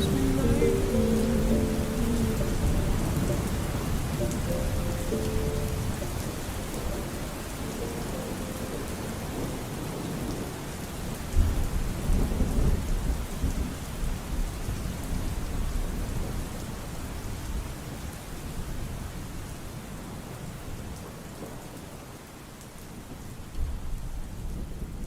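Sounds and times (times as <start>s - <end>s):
thunder rumble: 0.0s - 10.6s
steady rain: 0.0s - 25.0s.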